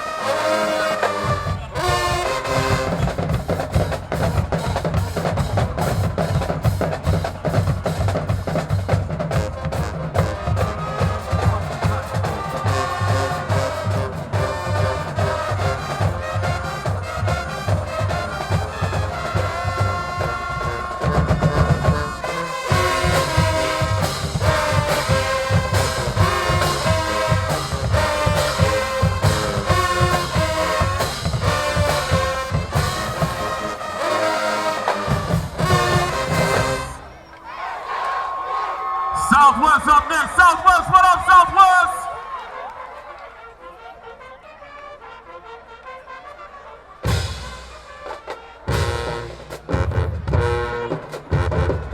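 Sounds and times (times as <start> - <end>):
trombones and trumpets: 0.0 - 38.0, 39.2 - 51.9.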